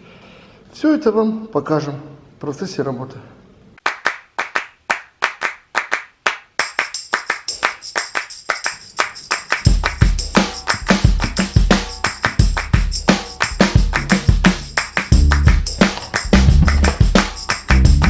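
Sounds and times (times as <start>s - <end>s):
claps or tambourine beat: 3.8s - 18.0s
heavy bass drum: 9.7s - 18.0s.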